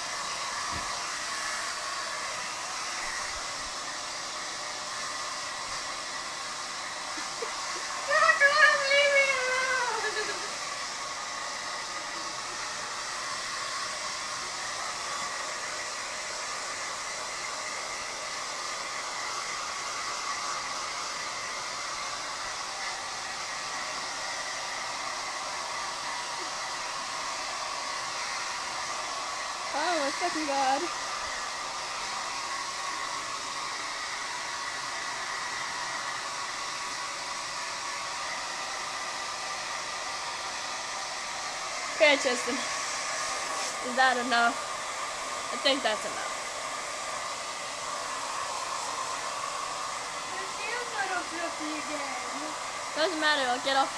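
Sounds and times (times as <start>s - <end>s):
hair dryer running: 0.0s - 53.9s.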